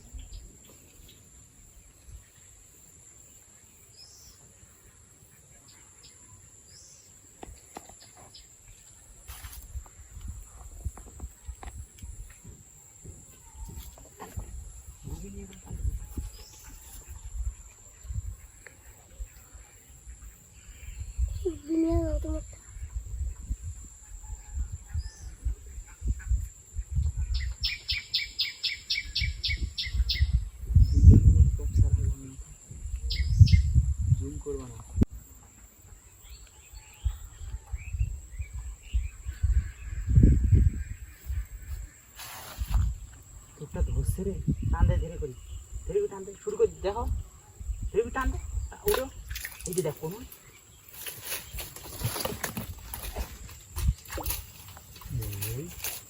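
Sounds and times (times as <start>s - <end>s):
insect drone: 0.0s - 56.0s
bird chirp: 24.9s - 31.3s, 33.0s - 34.8s
bird chirping: 27.2s - 31.3s.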